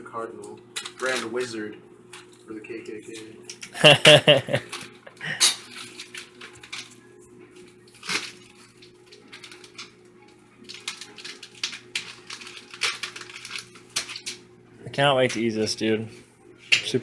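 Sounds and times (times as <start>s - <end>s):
food packaging rustling: 4.3s - 7.1s, 7.7s - 9.9s, 10.6s - 14.4s.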